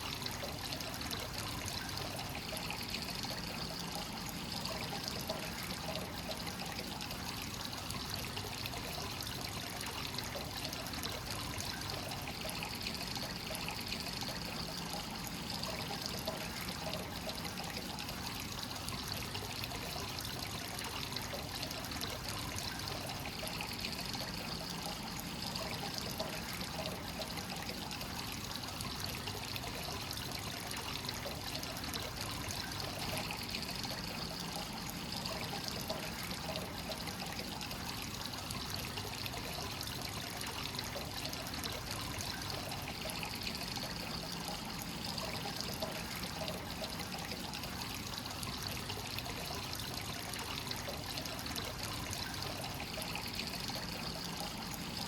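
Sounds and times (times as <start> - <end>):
water pouring into a bath: 0.0 - 55.0.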